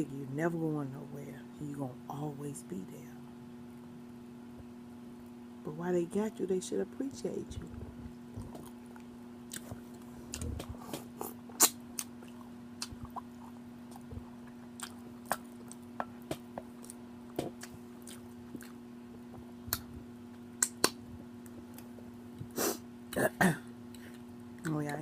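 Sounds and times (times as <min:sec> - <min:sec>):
low hum: 0:00.0 - 0:25.0
chewing and lip-smacking: 0:08.4 - 0:22.5, 0:23.9 - 0:25.0.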